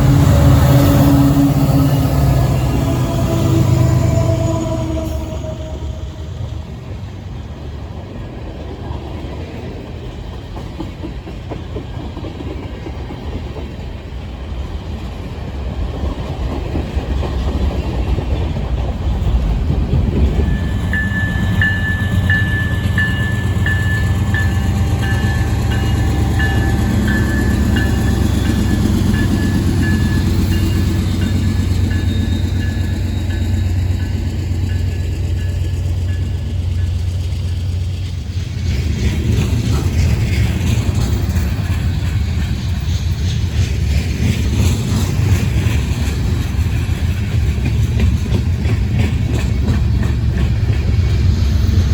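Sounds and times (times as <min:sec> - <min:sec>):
freight train rumbling past: 0:00.0 - 0:51.9
bell ringing: 0:20.5 - 0:36.4.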